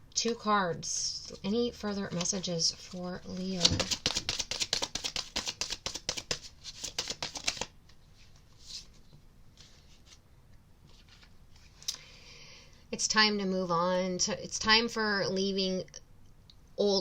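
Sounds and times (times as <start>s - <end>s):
card handling rustles: 2.0s - 10.2s
cards being shuffled: 2.0s - 10.2s.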